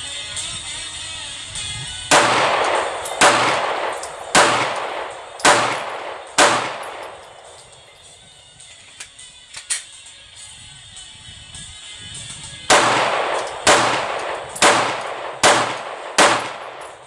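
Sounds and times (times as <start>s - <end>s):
background music: 0.0s - 17.0s
gunshots with long echo: 2.1s - 7.8s, 12.7s - 17.0s.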